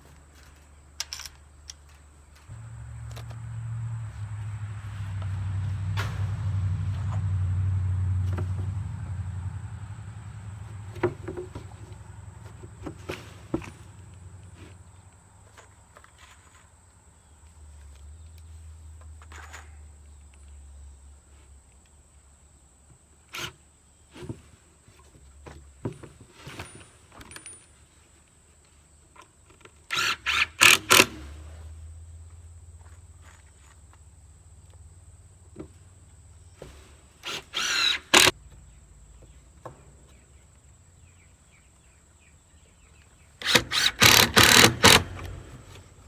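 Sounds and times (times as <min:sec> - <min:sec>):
low hum: 0:02.5 - 0:11.0
knocks and clicks of handwork: 0:43.4 - 0:45.9.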